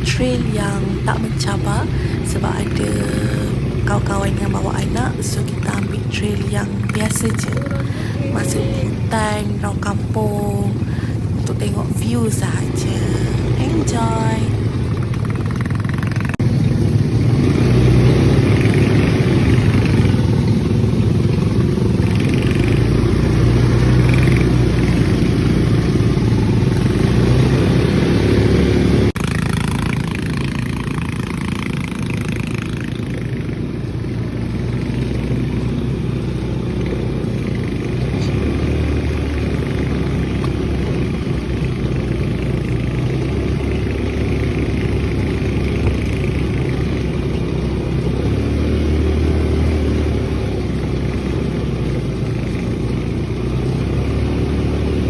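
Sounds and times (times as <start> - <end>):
atv engines rumbling: 0.0 - 55.0.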